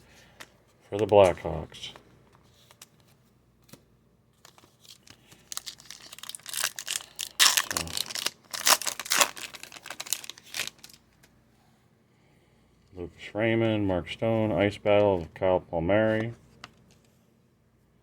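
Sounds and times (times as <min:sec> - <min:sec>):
card pack wrapper tearing: 0:04.4 - 0:11.0.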